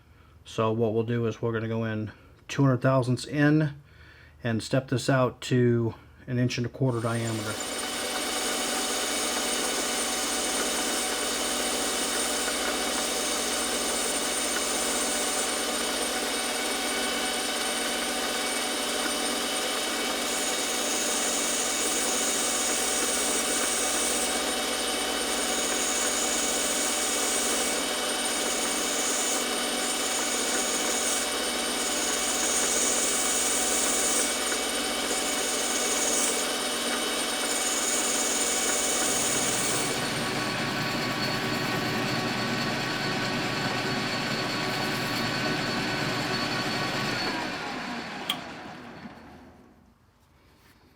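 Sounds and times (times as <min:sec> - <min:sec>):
high hiss of tool cutting: 0:06.9 - 0:46.7
metal lathe motor humming: 0:06.9 - 0:49.3.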